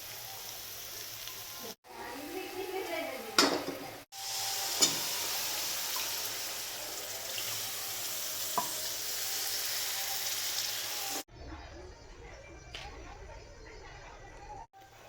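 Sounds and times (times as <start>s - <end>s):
food sizzling in a pan: 0.0s - 11.3s.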